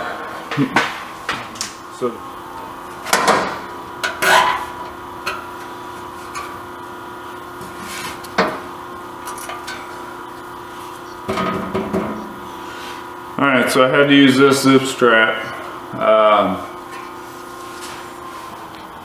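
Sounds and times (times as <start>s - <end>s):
steady hum: 0.0s - 19.0s.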